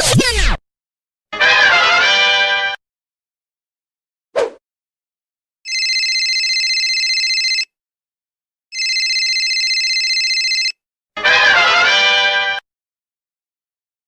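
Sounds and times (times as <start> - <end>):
telephone ringing: 5.7 - 7.7, 8.7 - 10.8.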